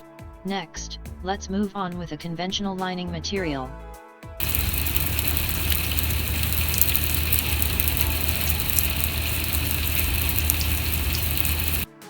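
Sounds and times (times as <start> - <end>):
heavy rain on a steel roof: 4.4 - 11.9
low hum: 4.4 - 11.9.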